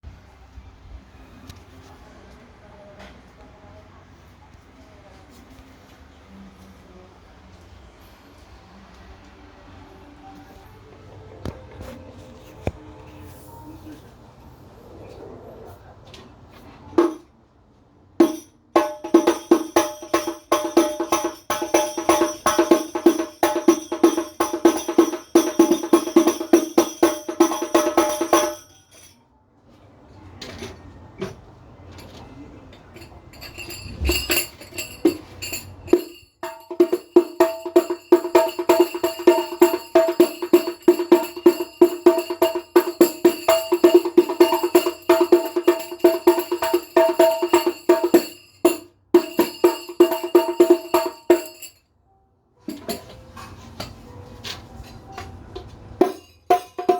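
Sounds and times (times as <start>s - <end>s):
frame drums played by hand: 17.0s - 17.2s, 18.2s - 28.8s, 33.7s - 51.7s, 56.0s - 56.9s.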